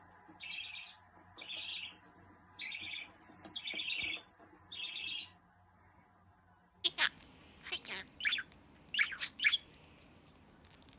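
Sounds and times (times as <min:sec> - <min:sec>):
budgerigar harsh chirps: 0:06.9 - 0:09.6.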